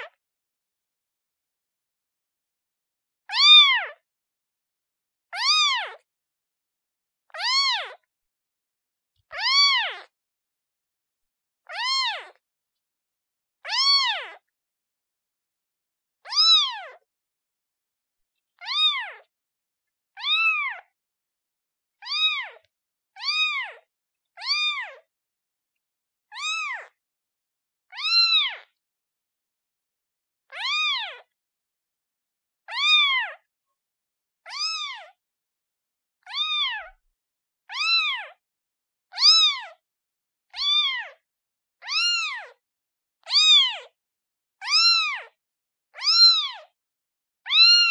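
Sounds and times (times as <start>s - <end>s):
kitten meowing: 3.3s - 3.9s, 5.4s - 6.0s, 7.4s - 8.0s, 9.4s - 10.1s, 11.7s - 12.4s, 13.7s - 14.4s, 16.3s - 17.0s, 18.6s - 19.2s, 20.2s - 20.9s, 22.0s - 22.6s, 23.2s - 23.8s, 24.4s - 25.0s, 26.3s - 26.9s, 27.9s - 28.6s, 30.5s - 31.2s, 32.7s - 33.4s, 34.5s - 35.2s, 36.3s - 37.0s, 37.7s - 38.4s, 39.1s - 39.7s, 40.6s - 41.2s, 41.8s - 42.6s, 43.2s - 43.9s, 44.6s - 45.3s, 46.0s - 46.7s, 47.5s - 47.9s.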